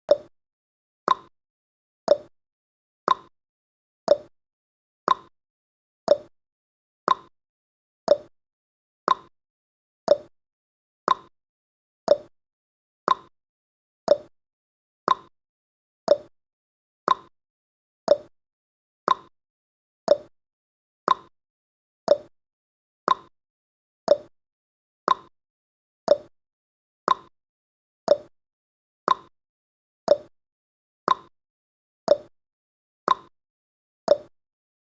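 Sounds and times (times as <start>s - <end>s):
timer ticking: 0.1s - 0.3s, 1.1s - 1.3s, 2.1s - 2.3s, 3.1s - 3.3s, 4.1s - 4.3s, 5.1s - 5.3s, 6.1s - 6.3s, 7.1s - 7.3s, 8.1s - 8.3s, 9.1s - 9.3s, 10.1s - 10.3s, 11.1s - 11.3s, 12.1s - 12.3s, 13.1s - 13.3s, 14.1s - 14.3s, 15.1s - 15.3s, 16.1s - 16.3s, 17.1s - 17.3s, 18.1s - 18.3s, 19.1s - 19.3s, 20.1s - 20.3s, 21.1s - 21.3s, 22.1s - 22.3s, 23.1s - 23.3s, 24.1s - 24.3s, 25.1s - 25.3s, 26.1s - 26.3s, 27.1s - 27.3s, 28.1s - 28.3s, 29.1s - 29.3s, 30.1s - 30.3s, 31.1s - 31.3s, 32.1s - 32.3s, 33.1s - 33.3s, 34.1s - 34.3s.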